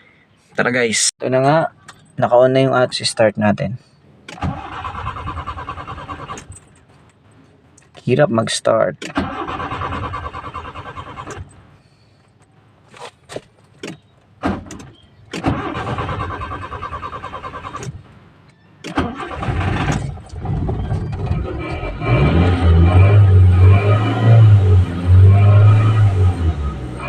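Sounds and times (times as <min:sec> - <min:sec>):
engine cranking by starter: 0:04.3 - 0:06.7, 0:09.0 - 0:11.6, 0:14.4 - 0:18.0, 0:18.8 - 0:26.9.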